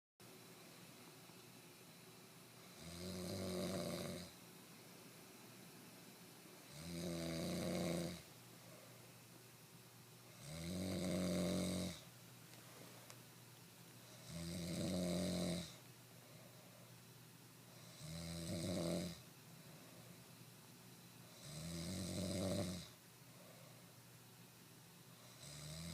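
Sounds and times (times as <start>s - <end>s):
quiet breathing: 0.4s - 24.4s
person snoring: 2.6s - 4.4s, 6.6s - 8.9s, 10.3s - 12.1s, 14.1s - 15.8s, 17.7s - 19.2s, 21.3s - 23.0s, 25.2s - 25.9s.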